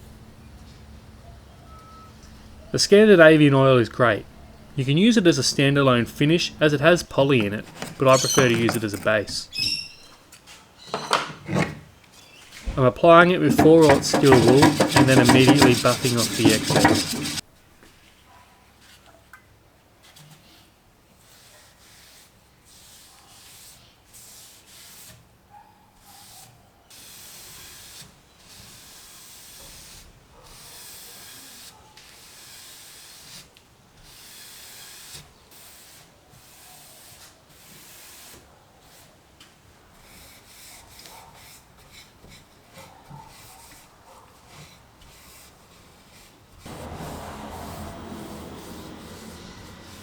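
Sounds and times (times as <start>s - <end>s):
cloth rubbing wooden tabletop: 5.3s - 9.6s, 13.4s - 17.4s.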